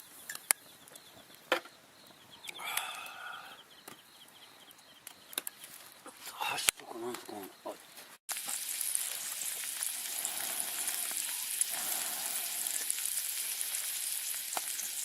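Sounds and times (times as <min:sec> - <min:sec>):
food sizzling in a pan: 0:08.3 - 0:15.0.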